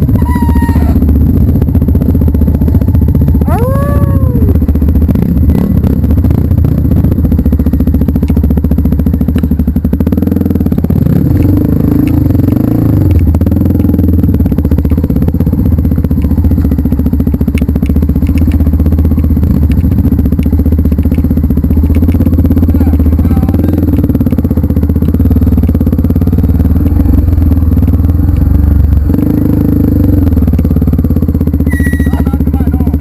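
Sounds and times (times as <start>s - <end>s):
motorcycle engine running: 0.0s - 33.0s.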